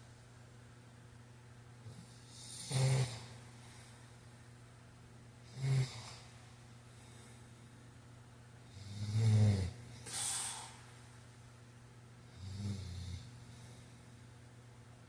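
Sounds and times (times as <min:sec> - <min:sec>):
man snoring: 0:01.9 - 0:03.4, 0:05.4 - 0:06.2, 0:08.7 - 0:09.8, 0:12.3 - 0:13.3
hissing breath out: 0:10.0 - 0:10.8.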